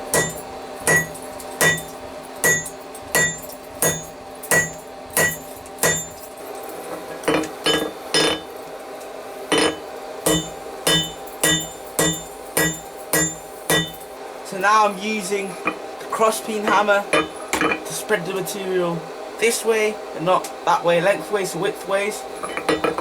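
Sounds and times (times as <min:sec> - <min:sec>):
hammer ringing on steel and anvil: 0:00.0 - 0:06.3, 0:07.3 - 0:08.5, 0:09.5 - 0:14.1, 0:16.7 - 0:17.8.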